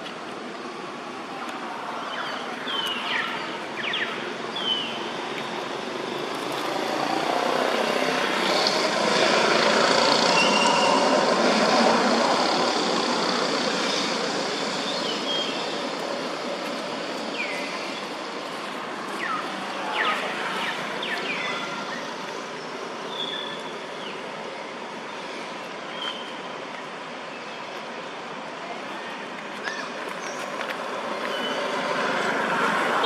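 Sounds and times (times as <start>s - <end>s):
motor vehicle passing by: 5.7s - 15.7s, 30.6s - 33.0s.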